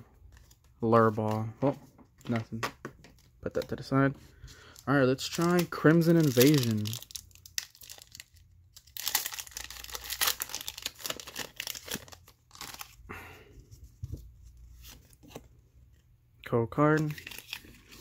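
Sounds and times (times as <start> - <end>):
foil wrapper crinkling torn open: 5.3 - 13.0.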